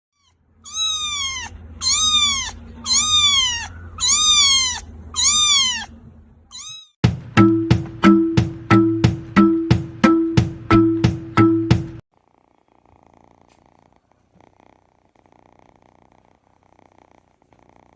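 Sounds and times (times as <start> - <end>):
cat meowing: 0.1 - 7.0
drum-like strikes: 7.0 - 12.0.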